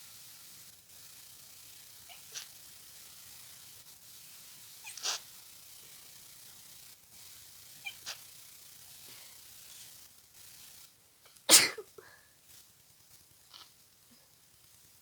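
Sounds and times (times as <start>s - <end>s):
person sneezing: 11.5s - 12.0s.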